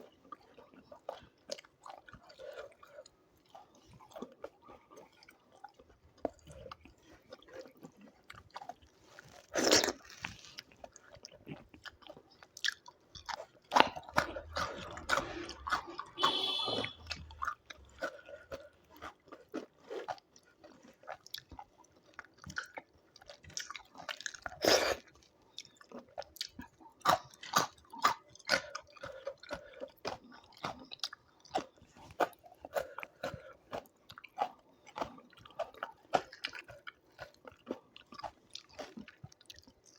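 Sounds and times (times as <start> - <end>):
person chewing food: 0.0 - 39.9
crunchy bites: 8.6 - 20.2.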